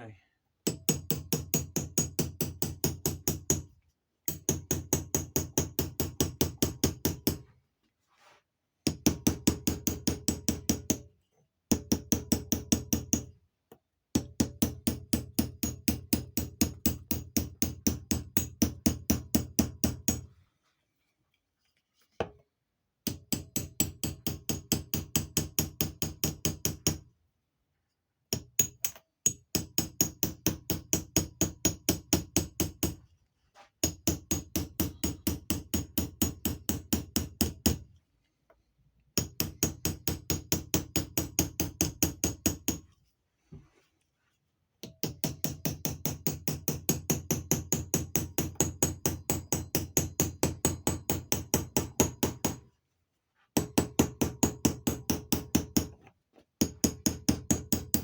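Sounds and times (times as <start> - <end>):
hammer tapping punch on metal: 23.1 - 27.0, 28.3 - 33.0, 33.8 - 37.8, 39.2 - 42.8, 44.8 - 52.6, 53.6 - 56.0, 56.6 - 58.0.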